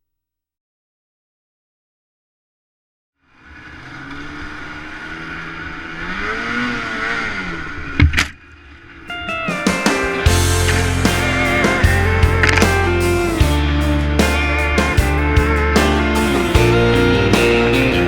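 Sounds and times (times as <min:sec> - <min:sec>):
snowmobile engine revving: 0:03.4 - 0:08.0, 0:10.3 - 0:18.0
sharp bang: 0:09.1 - 0:18.0.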